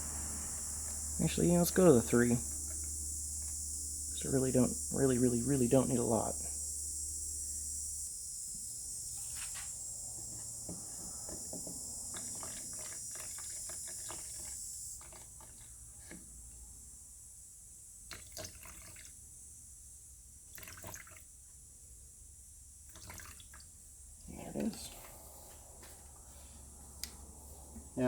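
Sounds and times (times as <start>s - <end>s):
steady high hiss: 0.0s - 15.0s, 23.8s - 28.0s
primer pouring into plastic cup: 11.0s - 16.2s.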